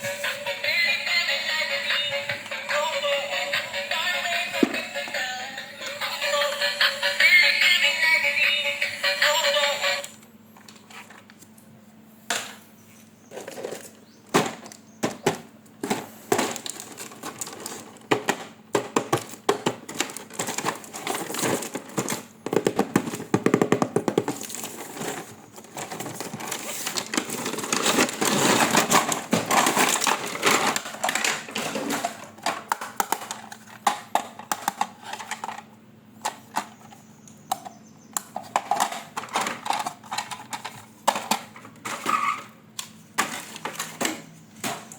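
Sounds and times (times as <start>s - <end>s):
packaging rustling: 16.0s - 18.2s, 19.1s - 33.9s.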